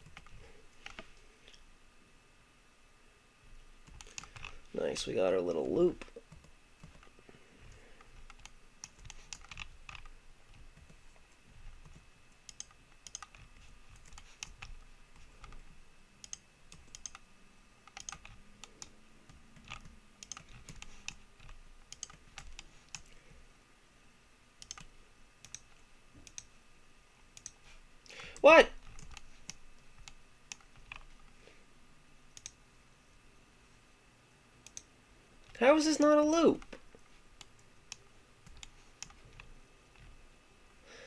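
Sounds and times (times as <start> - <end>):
keyboard and mouse clicks: 0.0 - 1.6, 3.8 - 4.7, 6.0 - 7.2, 8.1 - 11.1, 11.7 - 23.2, 24.6 - 26.5, 27.4 - 27.6, 28.8 - 31.3, 32.4 - 32.6, 34.6 - 35.6, 36.6 - 40.2.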